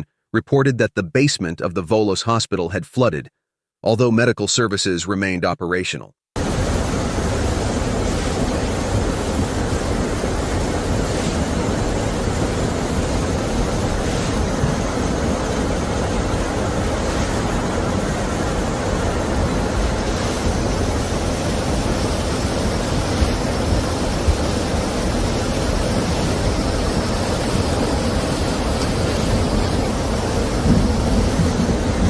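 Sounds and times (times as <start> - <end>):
floodwater rushing: 6.4 - 32.0.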